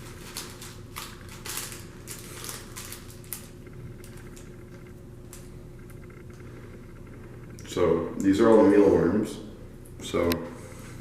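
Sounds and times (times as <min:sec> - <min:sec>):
snack package crinkling: 0:00.0 - 0:06.0.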